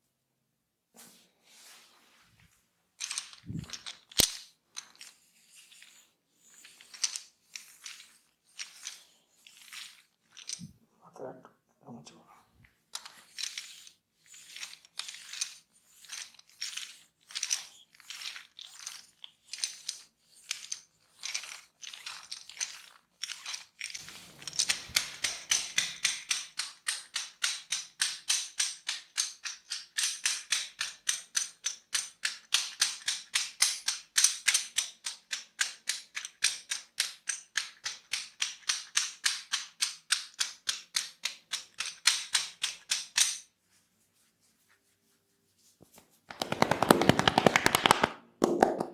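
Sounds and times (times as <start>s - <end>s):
hands swishing in massage strokes: 43.7s - 48.9s
fast hand tapping: 46.3s - 48.9s.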